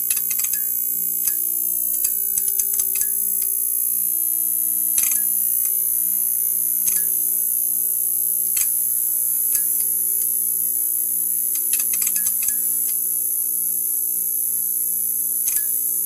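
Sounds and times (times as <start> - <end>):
sharp electrical clicks: 0.0 - 3.6, 4.9 - 5.9, 8.5 - 10.4, 11.4 - 13.1, 15.4 - 16.0
neon sign buzzing: 0.0 - 16.0.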